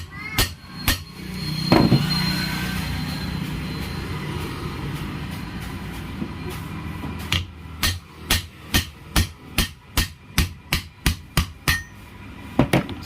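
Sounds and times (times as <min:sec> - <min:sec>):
hammer striking metal: 0:00.0 - 0:02.7, 0:07.2 - 0:12.8.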